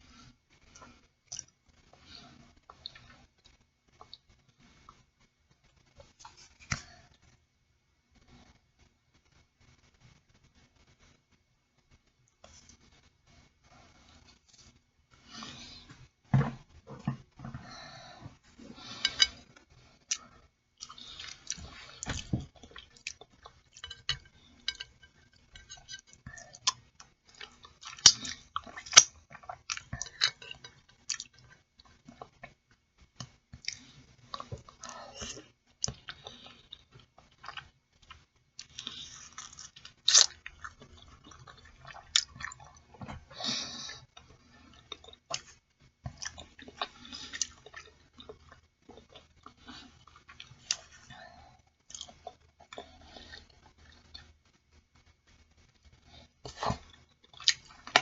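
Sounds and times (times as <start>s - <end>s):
person chewing: 18.7s - 32.6s, 33.2s - 54.4s, 55.9s - 58.0s
clicks and smacks of eating: 19.0s - 43.3s, 43.9s - 51.1s, 51.8s - 54.3s, 56.5s - 58.0s.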